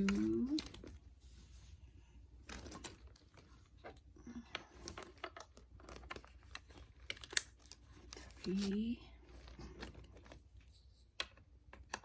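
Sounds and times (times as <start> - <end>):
plastic parts clicking and tapping: 2.4 - 10.4, 11.1 - 12.0.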